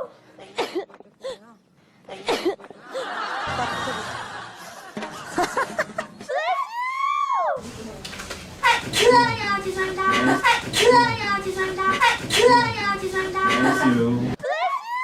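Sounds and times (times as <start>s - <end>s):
people laughing and snickering: 2.6s - 6.7s, 9.7s - 14.2s.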